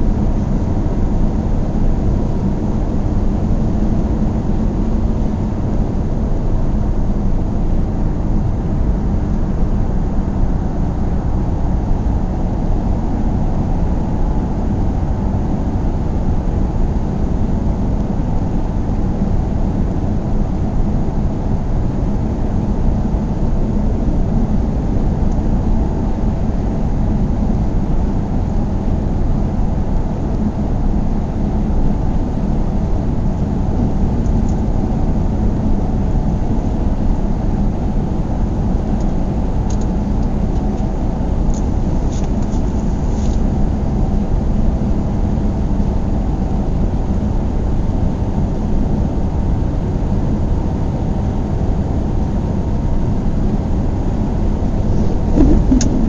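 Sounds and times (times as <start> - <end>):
car engine and tyre rumble: 0.0 - 56.0
faint hum: 51.2 - 56.0.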